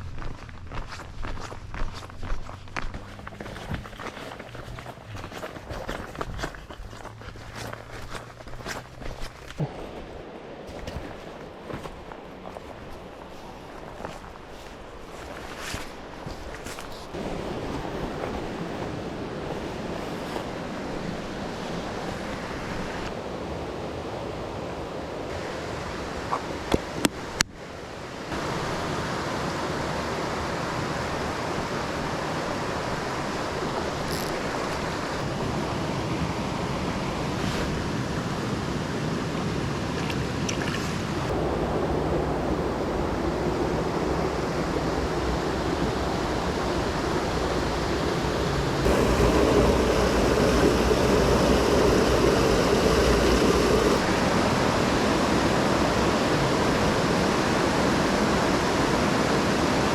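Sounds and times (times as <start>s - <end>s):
rushing mountain stream: 2.8s - 59.9s.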